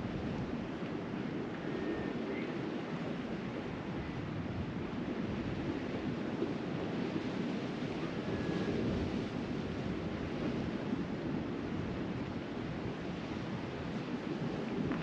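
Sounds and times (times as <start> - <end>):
sea surf washing on shore: 0.0 - 15.0
wind on microphone: 0.0 - 15.0.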